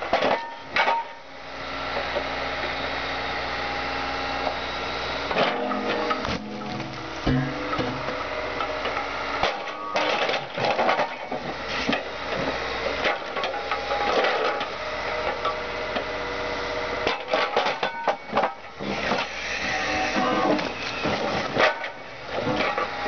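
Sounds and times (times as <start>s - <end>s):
excavator engine hum: 0.0s - 23.0s
metal crunching and cracking: 5.3s - 12.1s.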